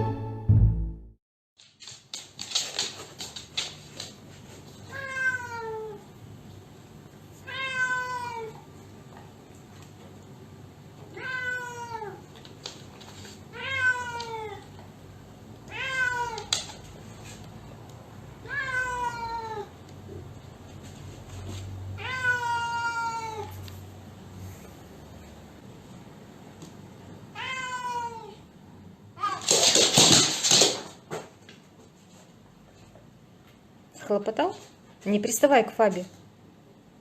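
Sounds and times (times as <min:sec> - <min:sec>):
cat meowing: 0:04.9 - 0:06.0, 0:07.4 - 0:08.6, 0:11.1 - 0:12.2, 0:13.5 - 0:14.7, 0:15.7 - 0:16.6, 0:18.4 - 0:19.7, 0:22.0 - 0:23.6, 0:27.3 - 0:28.4.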